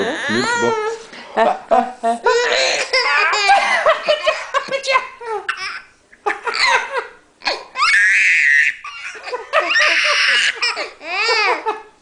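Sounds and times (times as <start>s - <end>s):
baby laughing: 2.3s - 4.6s, 5.5s - 11.8s.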